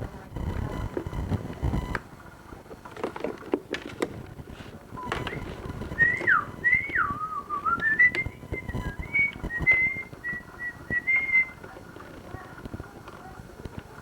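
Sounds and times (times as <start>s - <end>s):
person whistling a tune: 6.0s - 11.6s.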